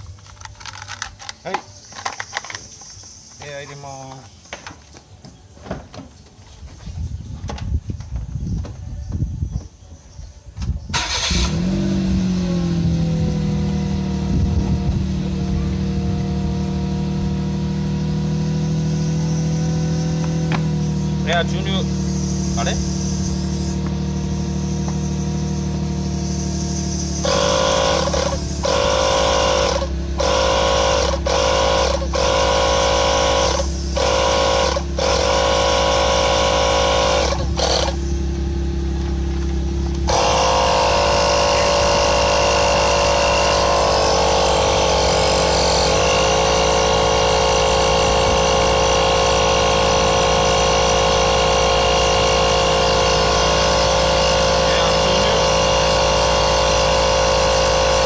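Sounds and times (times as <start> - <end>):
electric air compressor inflating tyre: 11.0 - 38.4, 39.9 - 58.0.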